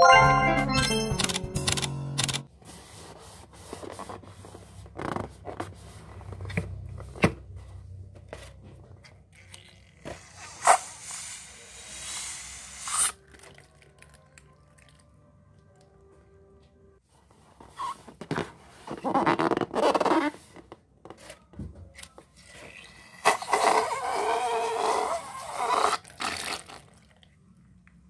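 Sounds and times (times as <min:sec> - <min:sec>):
sharp clicks: 0:00.8 - 0:02.4
rubber balloons rubbing: 0:17.7 - 0:20.8, 0:23.0 - 0:26.6.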